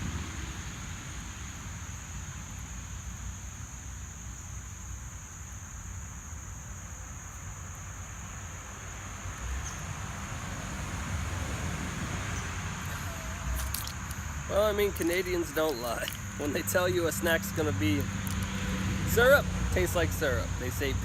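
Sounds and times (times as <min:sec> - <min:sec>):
high-pitched insect drone: 0:12.4 - 0:21.0.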